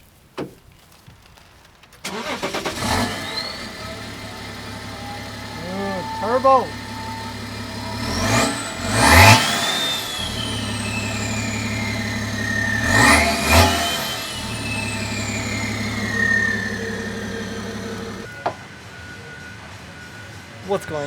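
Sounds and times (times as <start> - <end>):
car engine idling and revving: 2.0 - 18.3
turbo whistle: 3.3 - 18.3.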